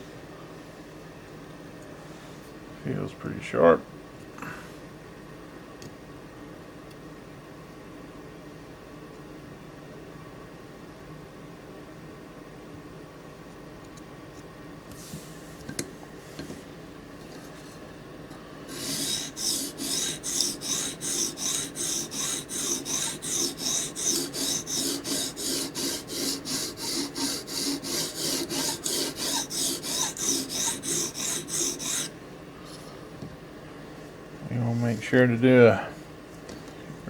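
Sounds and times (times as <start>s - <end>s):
knife scraping on sharpening stone: 18.7s - 32.1s.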